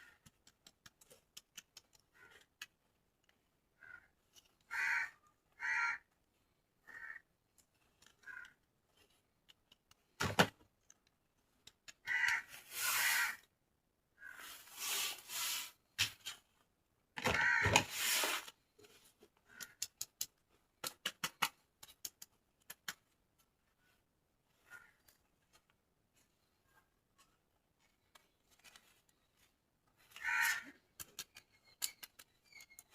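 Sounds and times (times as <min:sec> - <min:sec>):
small plastic clicks: 0:00.0 - 0:03.5, 0:07.5 - 0:12.5, 0:19.3 - 0:23.5, 0:29.9 - 0:32.9.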